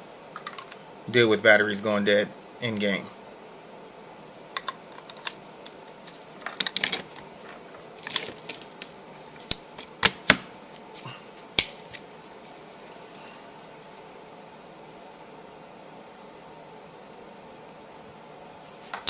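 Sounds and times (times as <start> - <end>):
clicks and taps of small parts: 0.4 - 0.8, 4.6 - 5.4.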